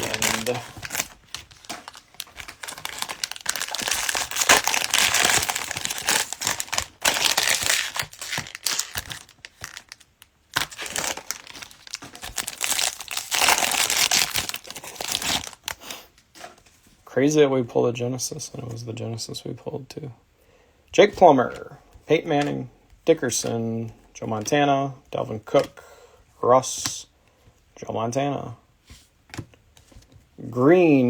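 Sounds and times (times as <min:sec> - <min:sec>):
cellophane wrapper crinkling and tearing: 0:00.0 - 0:15.8.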